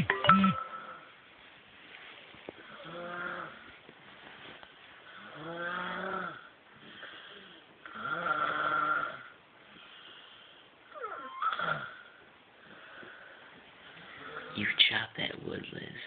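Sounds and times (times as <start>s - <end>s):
person snoring heavily: 5.2s - 6.5s, 7.1s - 9.3s.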